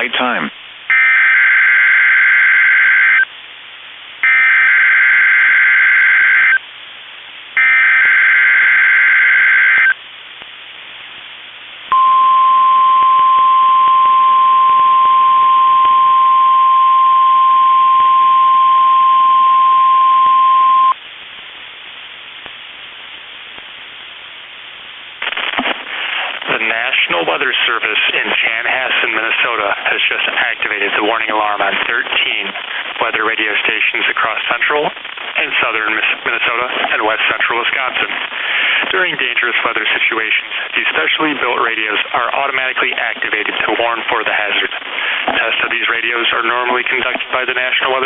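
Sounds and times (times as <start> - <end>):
faint radio hiss: 0.0 - 48.0
steady warning alarm tone: 0.9 - 3.2, 4.2 - 6.6, 7.6 - 10.0, 11.9 - 21.0.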